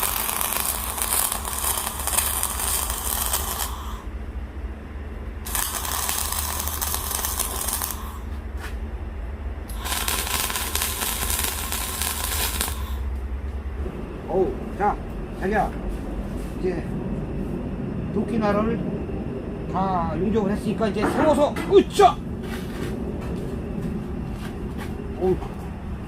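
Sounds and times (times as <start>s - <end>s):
crackling welding arc: 0.0s - 4.1s, 5.4s - 8.3s, 9.7s - 13.1s
steady low hum: 0.0s - 26.0s.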